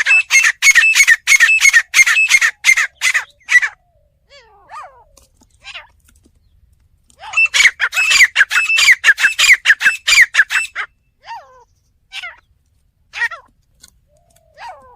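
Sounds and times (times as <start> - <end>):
francolin calling: 0.0 - 5.9, 7.2 - 12.5.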